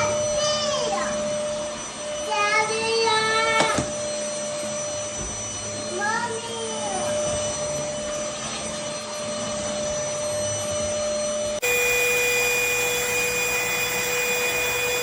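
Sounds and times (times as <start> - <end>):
voice: 0.0 - 1.2, 2.3 - 3.8, 5.9 - 7.3
stick vacuum running: 0.0 - 15.0.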